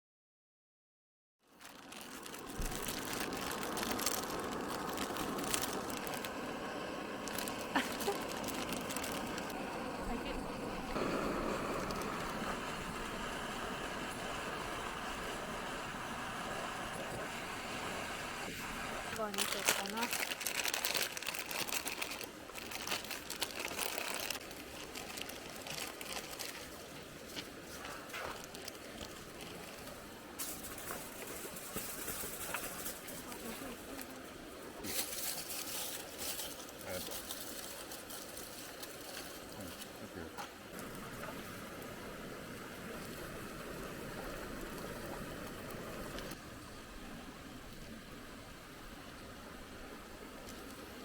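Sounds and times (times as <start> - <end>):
crinkling and crunching: 1.4 - 9.6, 19.2 - 34.2, 34.8 - 39.9
small rattles and ticks: 1.5 - 6.4, 19.2 - 34.2.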